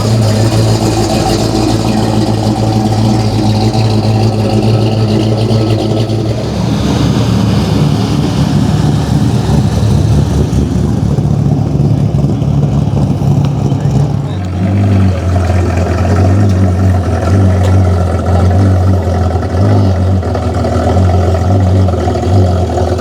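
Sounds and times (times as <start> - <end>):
car engine idling: 0.0 - 23.0.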